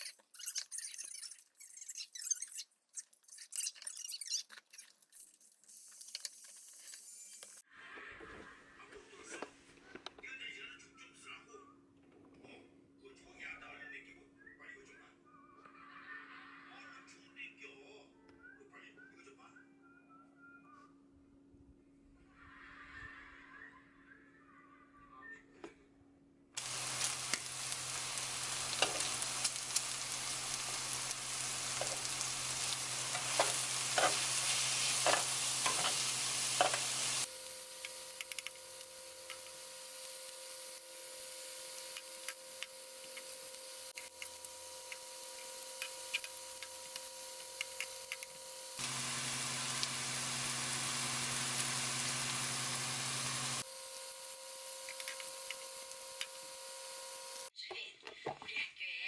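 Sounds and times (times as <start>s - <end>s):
food sizzling in a hot pan: 5.1s - 7.7s, 26.6s - 57.5s.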